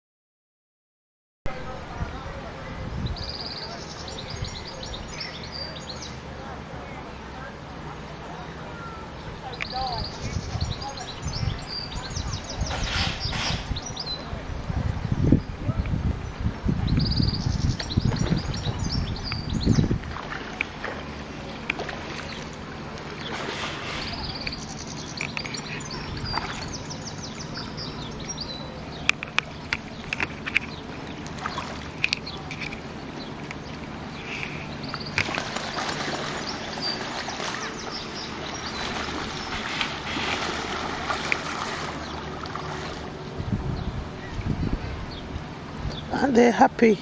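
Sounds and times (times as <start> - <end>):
broad rushing noise: 1.5 - 47.0
steady low hum: 1.5 - 47.0
small birds chirping: 3.0 - 7.4, 8.4 - 14.3, 15.2 - 47.0
ducks splashing on a pond: 10.8 - 13.9, 19.8 - 44.3.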